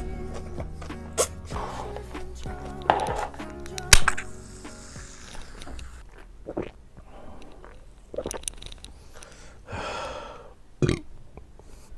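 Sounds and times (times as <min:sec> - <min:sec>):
background music: 0:00.0 - 0:06.0
person chewing food: 0:05.0 - 0:09.4.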